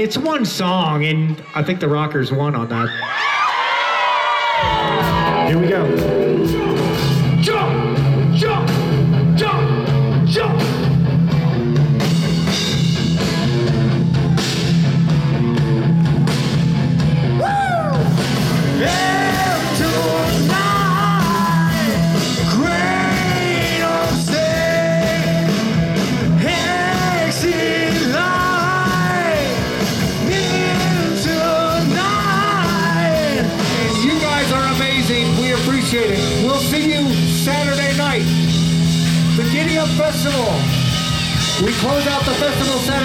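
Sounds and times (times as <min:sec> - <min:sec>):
rock band playing loudly: 0:04.4 - 0:43.0
sliding bending guitar lead: 0:04.6 - 0:09.2.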